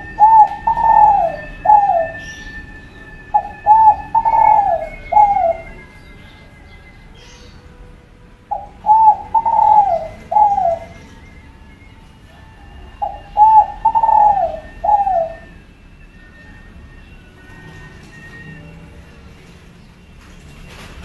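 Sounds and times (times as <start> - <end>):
dove cooing: 0.0 - 6.2, 8.4 - 11.5, 12.2 - 19.7.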